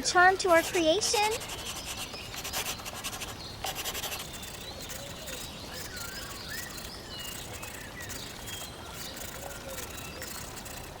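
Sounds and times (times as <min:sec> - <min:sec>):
birds chirping: 0:00.0 - 0:11.0
marker scratching on paper: 0:00.2 - 0:11.0.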